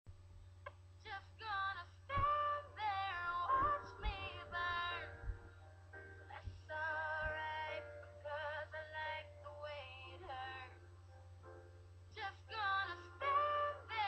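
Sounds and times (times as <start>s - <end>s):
steady low hum: 0.1s - 14.0s
woman singing pop song: 1.0s - 5.4s, 6.3s - 10.8s, 12.2s - 14.0s.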